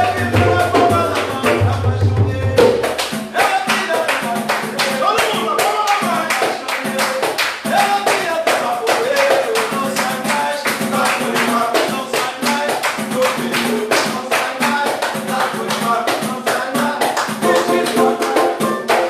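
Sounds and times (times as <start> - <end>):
dense quick percussion: 0.0 - 7.0
person singing: 0.0 - 19.0
samba band playing: 0.0 - 19.0.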